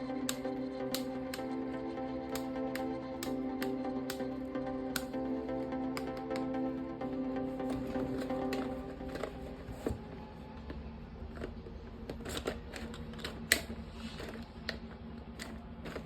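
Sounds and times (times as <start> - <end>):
background music: 0.0 - 11.5
plastic toy parts clicking: 11.3 - 14.8.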